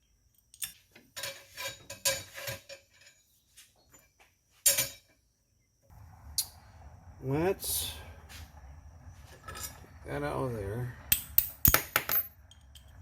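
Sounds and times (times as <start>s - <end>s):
small metal parts clinking: 0.3s - 3.3s, 11.1s - 13.0s.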